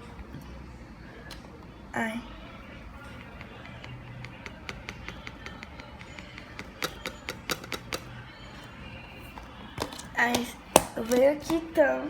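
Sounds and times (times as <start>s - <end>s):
glitter tapping from container: 3.4s - 8.1s.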